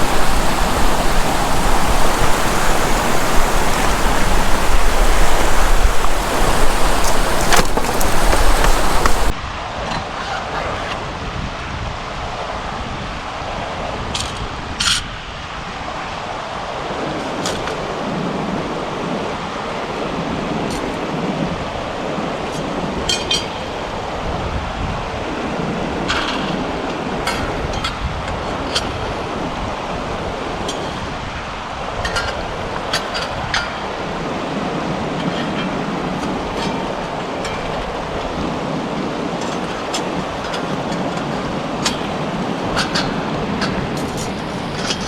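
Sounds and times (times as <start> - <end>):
river running: 0.0 - 9.6, 15.3 - 45.0
wood clicking and knocking: 3.2 - 9.3.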